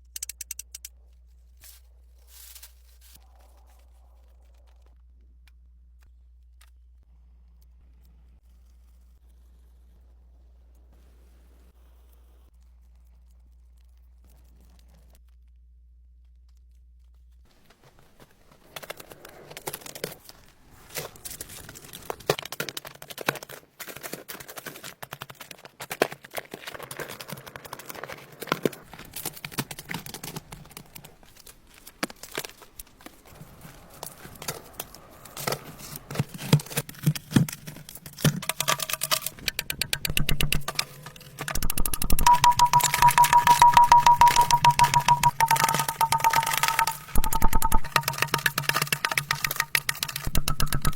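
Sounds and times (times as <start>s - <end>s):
irregular clicks and knocks: 36.5s - 50.9s
music with steady beat: 41.6s - 50.9s.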